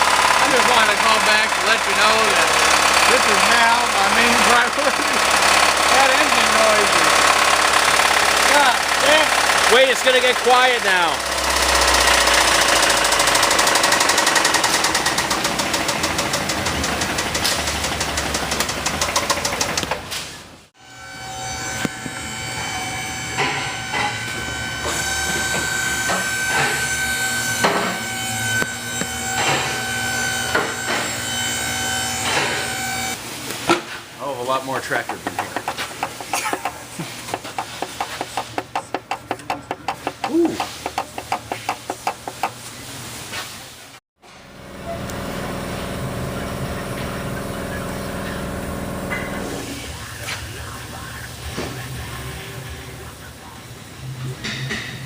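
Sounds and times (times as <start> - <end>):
mechanical hum: 0.0 - 55.0
sharp metallic clanks: 21.7 - 32.9.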